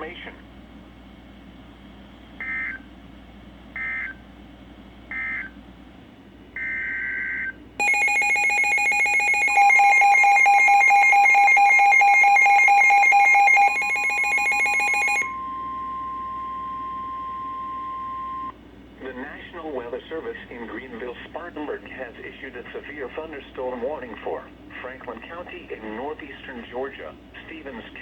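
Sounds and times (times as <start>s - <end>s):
steady single alarm tone: 6.6s - 18.6s.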